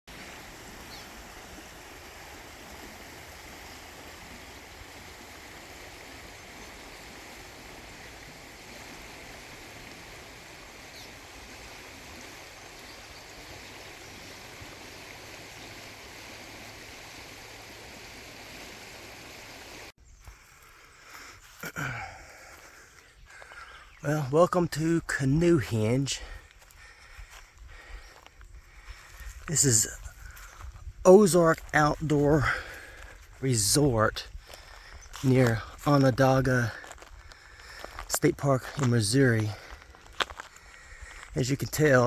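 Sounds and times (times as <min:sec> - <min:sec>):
river water rushing: 0:00.1 - 0:19.9.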